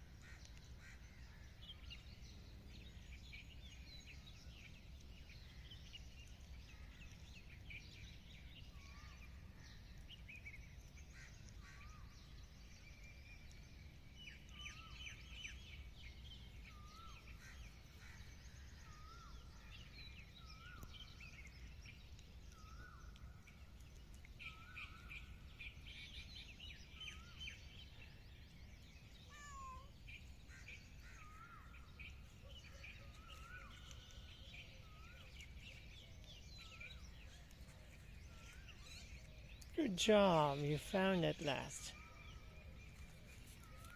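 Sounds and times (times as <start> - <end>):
faint birds chirping: 0.0 - 43.9.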